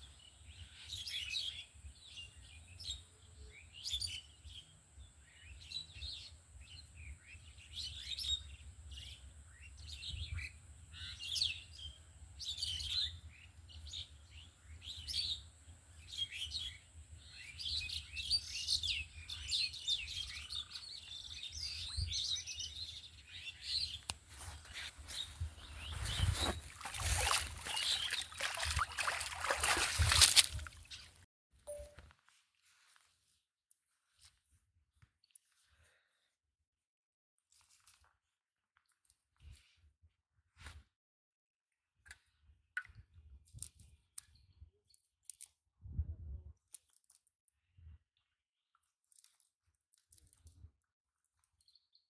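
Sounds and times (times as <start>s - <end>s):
small birds chirping: 0.0s - 31.9s.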